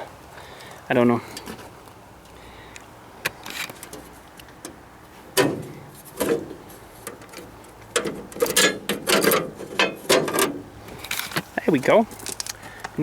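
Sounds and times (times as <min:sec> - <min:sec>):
metal parts clunking and clicking: 0:03.3 - 0:11.4.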